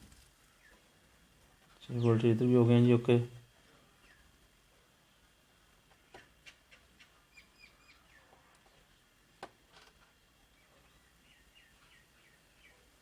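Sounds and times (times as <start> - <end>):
faint small bird chirps: 3.8 - 4.4, 6.0 - 8.9, 10.4 - 13.0.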